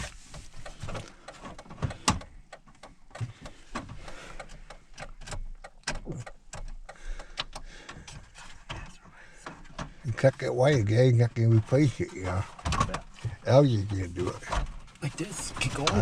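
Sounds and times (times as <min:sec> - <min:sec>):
plastic panel clicking and knocking: 0:00.6 - 0:08.8.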